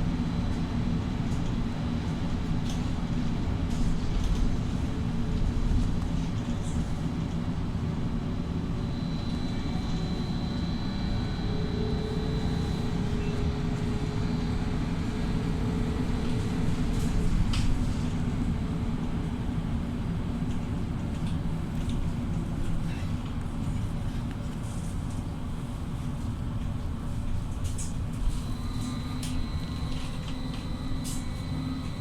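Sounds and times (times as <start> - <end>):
trolleybus rumble and road noise: 0.0 - 32.0
faint whining tones: 8.5 - 16.4, 28.4 - 32.0.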